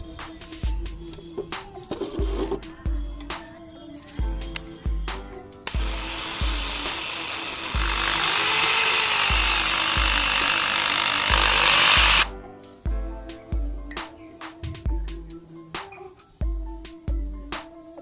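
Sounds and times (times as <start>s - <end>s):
background music with steady beat: 0.0s - 18.0s
hammer drill running: 5.7s - 12.3s.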